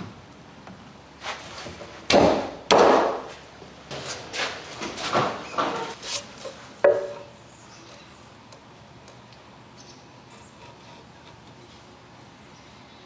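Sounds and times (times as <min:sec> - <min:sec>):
hammer strikes on wood: 0:02.1 - 0:03.3.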